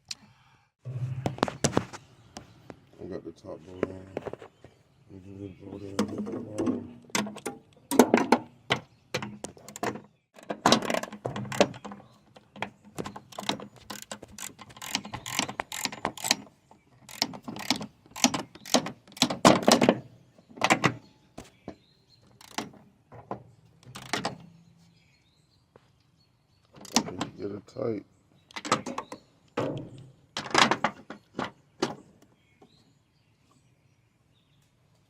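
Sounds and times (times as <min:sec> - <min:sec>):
hand tools clicking on metal: 0:13.2 - 0:19.4.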